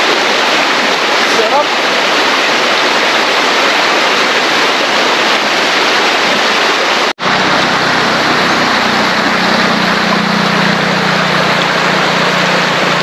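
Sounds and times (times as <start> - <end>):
river water rushing: 0.0 - 13.0
low steady hum: 7.2 - 13.0.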